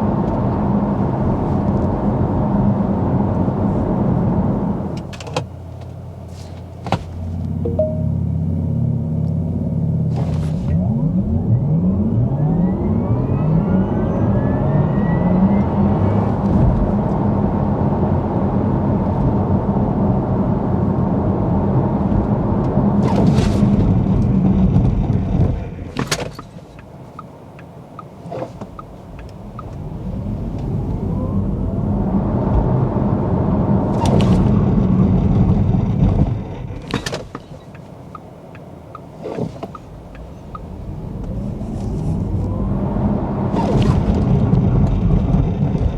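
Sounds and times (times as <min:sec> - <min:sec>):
tyre and road rumble: 0:03.2 - 0:11.1, 0:21.5 - 0:45.9.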